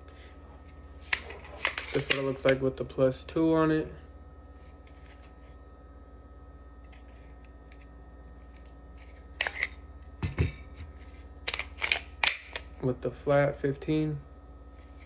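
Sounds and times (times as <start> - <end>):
steady low hum: 0.0 - 15.0
pistol handling clicks: 11.5 - 12.7.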